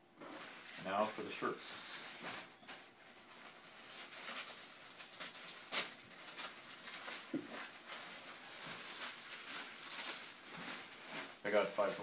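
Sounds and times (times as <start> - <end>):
packaging rustling and crinkling: 0.2 - 12.0.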